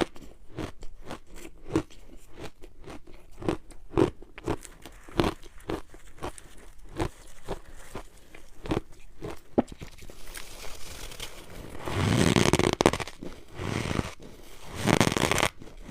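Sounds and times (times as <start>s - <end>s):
snow crunching: 10.3s - 15.9s.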